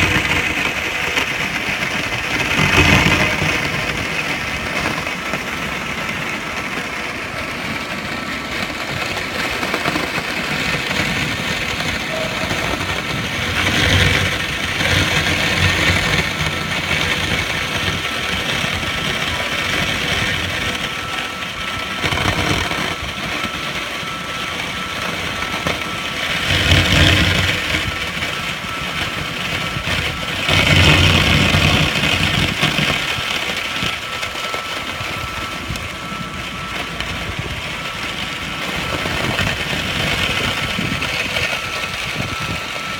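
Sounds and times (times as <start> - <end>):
machine hum: 0.0 - 42.9.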